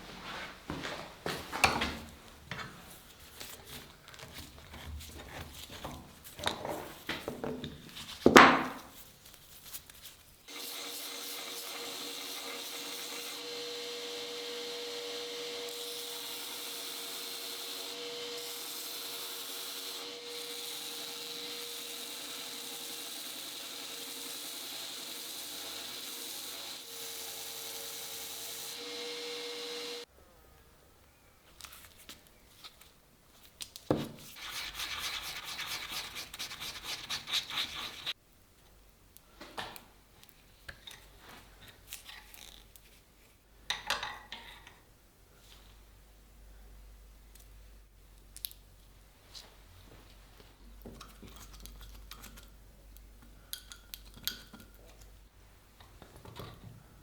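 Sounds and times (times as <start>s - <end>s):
small power tool running: 10.5s - 30.1s
rubbing and scraping on metal blade: 34.3s - 38.2s.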